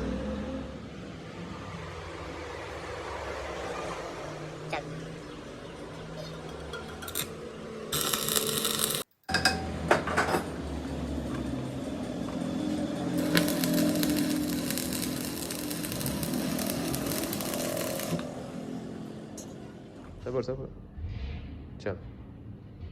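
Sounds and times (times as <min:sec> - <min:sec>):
machine running with low hum: 0:10.7 - 0:18.4
power tool hissy burst: 0:13.2 - 0:18.3.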